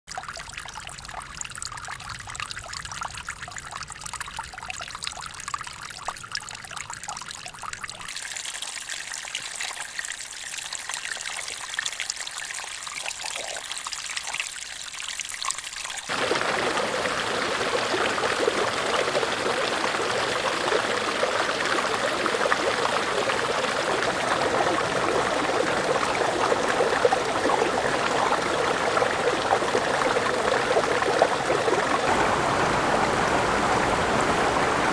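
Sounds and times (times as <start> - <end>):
waterfall rushing and splashing: 16.1 - 34.9.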